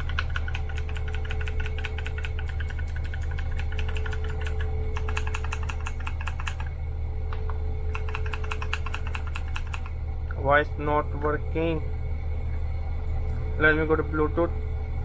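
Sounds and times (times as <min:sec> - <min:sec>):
fast keyboard typing clicks: 0:00.0 - 0:06.7, 0:07.3 - 0:09.9
steady low hum: 0:00.0 - 0:15.0.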